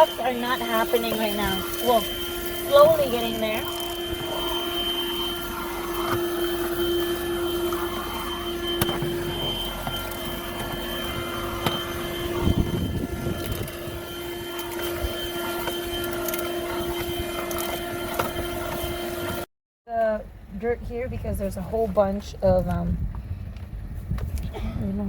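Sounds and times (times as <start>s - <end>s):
vacuum motor whine: 0.0s - 19.5s.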